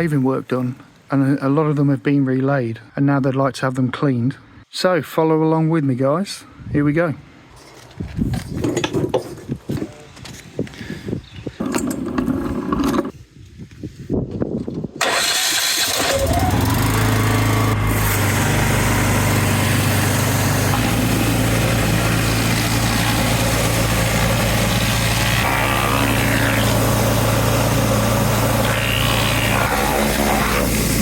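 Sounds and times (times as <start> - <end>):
pressure washer engine hum: 15.0 - 31.0
high-pressure water jet hissing: 15.2 - 31.0.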